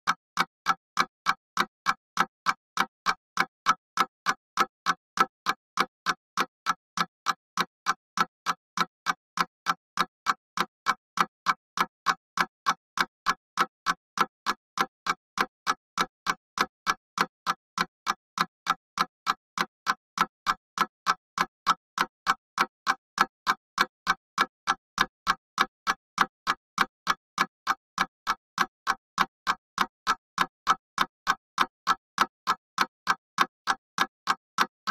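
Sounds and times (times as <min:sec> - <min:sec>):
mechanical clock ticking: 0:00.1 - 0:34.9.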